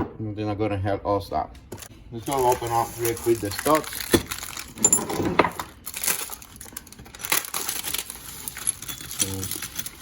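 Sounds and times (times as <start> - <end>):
packaging tearing and crinkling: 2.2 - 4.8, 5.6 - 10.0.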